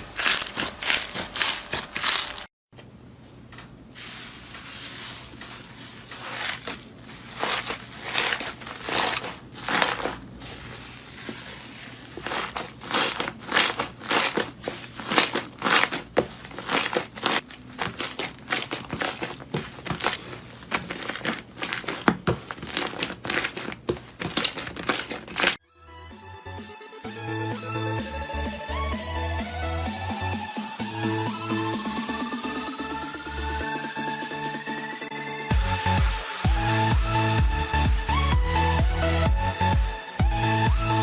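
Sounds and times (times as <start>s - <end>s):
slime crinkling and crackling: 0.0s - 2.5s, 4.0s - 25.6s.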